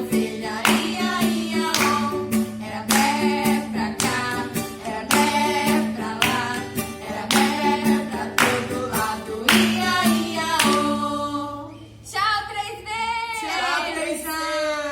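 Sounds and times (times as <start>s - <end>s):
women singing children's song: 0.0s - 14.9s.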